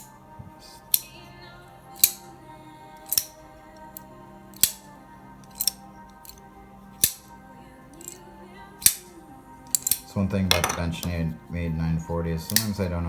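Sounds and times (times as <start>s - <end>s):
background music: 0.0s - 13.0s
pocket knife metallic clicks: 3.1s - 3.3s, 9.7s - 10.1s.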